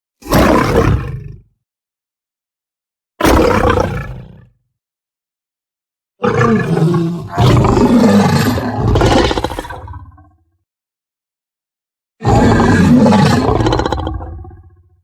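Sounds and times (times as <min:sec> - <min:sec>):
big cat roar: 0:00.2 - 0:01.4, 0:03.2 - 0:04.5, 0:06.2 - 0:10.4, 0:12.2 - 0:15.0.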